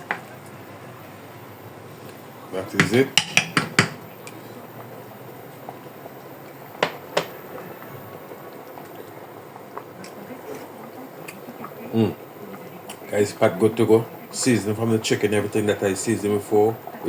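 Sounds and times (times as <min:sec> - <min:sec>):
pot of food bubbling: 0:00.0 - 0:17.0
sharp knocks: 0:02.8 - 0:04.0.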